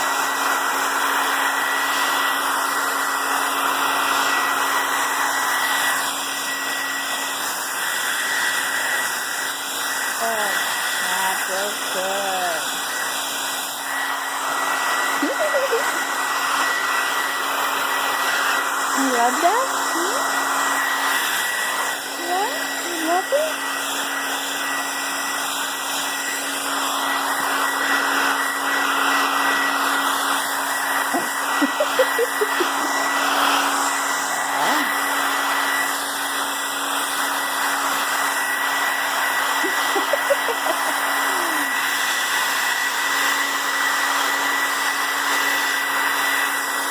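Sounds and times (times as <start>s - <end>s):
hair dryer blowing: 0.0s - 46.9s.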